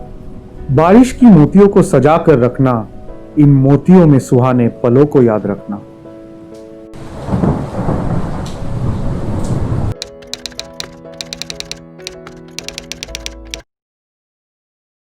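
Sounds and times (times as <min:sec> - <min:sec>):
soft background music: 0:00.0 - 0:09.0, 0:09.9 - 0:13.6
thunder rumbling: 0:07.0 - 0:09.9
typewriter-like clicks: 0:10.0 - 0:13.6.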